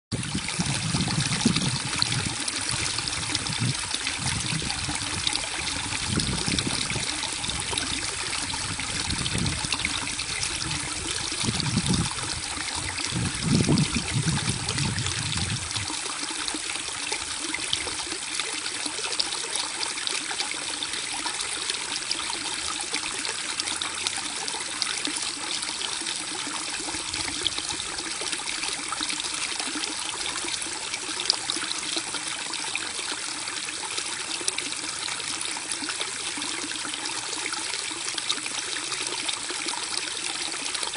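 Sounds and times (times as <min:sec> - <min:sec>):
brook babbling: 0:00.1 - 0:40.9
low rumbling: 0:11.4 - 0:15.9.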